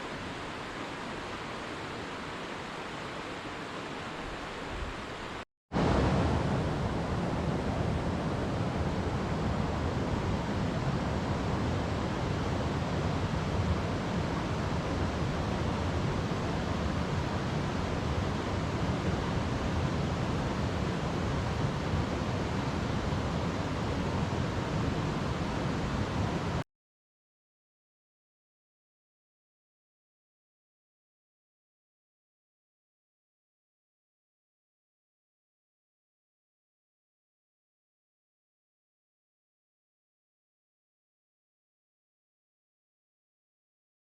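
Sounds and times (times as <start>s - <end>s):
running water rushing: 0.0s - 26.6s.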